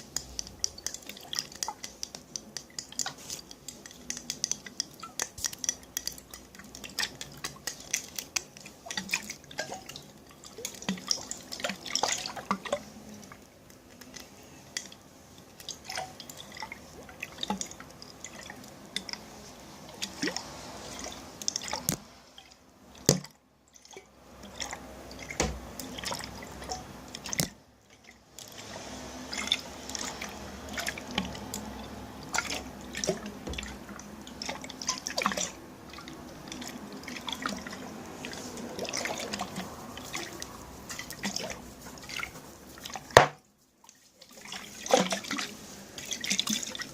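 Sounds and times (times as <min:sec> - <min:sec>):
water dripping and splashing: 0:00.0 - 0:46.9.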